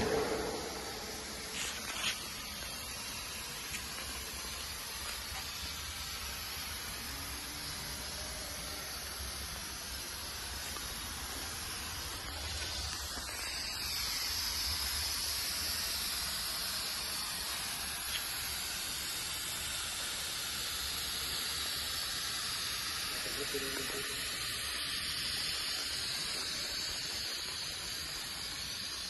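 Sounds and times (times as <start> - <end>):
low compressor hum: 0.0 - 17.9
compressed air hissing: 0.0 - 29.0.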